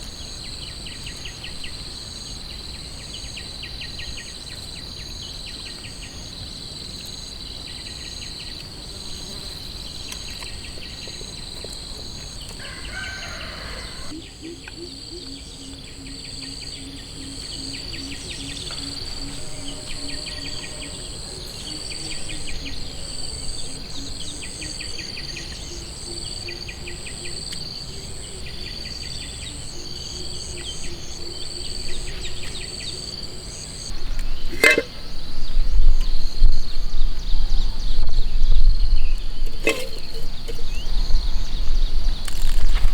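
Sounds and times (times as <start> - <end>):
crickets chirping: 0.0 - 42.9
insects trilling: 0.0 - 42.9
low pulsing drone: 14.1 - 27.1.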